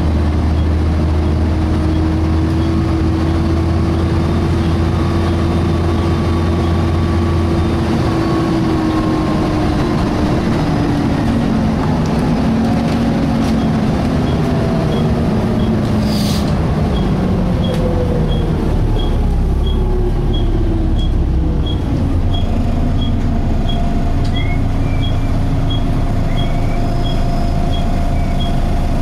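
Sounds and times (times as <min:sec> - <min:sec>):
bus diesel engine and fan: 0:00.0 - 0:29.0
air hiss: 0:16.0 - 0:16.5.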